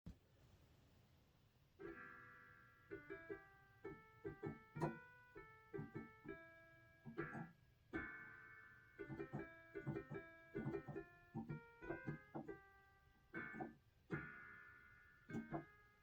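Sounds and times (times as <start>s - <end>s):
electronic keyboard chords: 1.8s - 16.0s.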